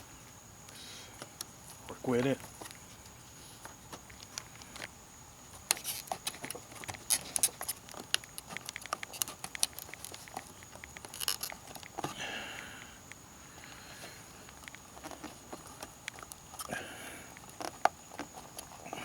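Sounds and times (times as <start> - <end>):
plastic light housing clicking and creaking: 5.6 - 12.1, 14.4 - 16.7, 17.3 - 18.9.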